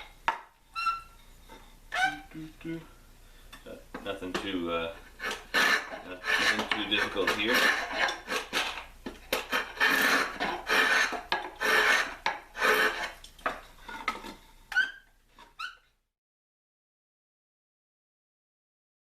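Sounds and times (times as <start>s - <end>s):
rasp scraping wood: 4.2s - 15.8s.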